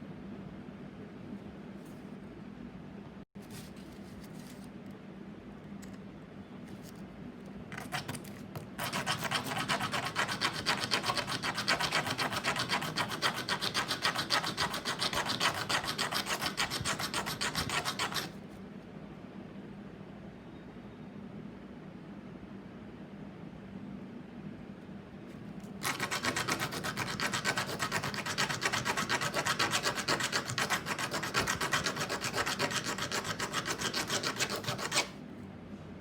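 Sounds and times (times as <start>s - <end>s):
hand file on metal: 8.8s - 18.3s, 25.8s - 35.2s.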